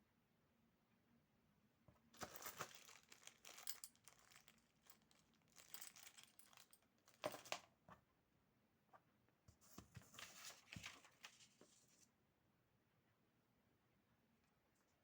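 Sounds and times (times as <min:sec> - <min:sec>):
plastic packaging crinkling: 0:02.2 - 0:07.3.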